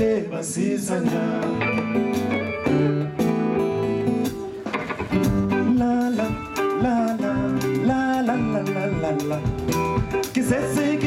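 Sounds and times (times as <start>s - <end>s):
person singing: 0.0s - 3.3s, 5.4s - 11.0s
guitar playing: 0.9s - 11.0s
drums playing: 1.1s - 11.0s.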